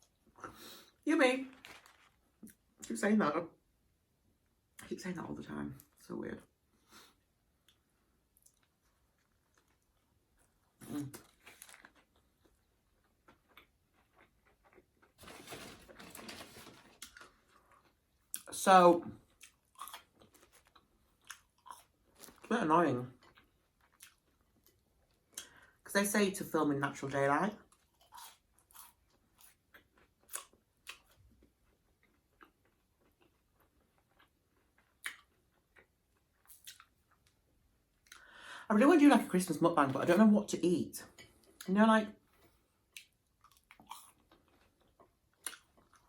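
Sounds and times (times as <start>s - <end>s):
chewing: 8.4s - 15.2s, 19.2s - 22.5s, 23.2s - 25.6s, 27.7s - 37.4s, 42.4s - 46.0s.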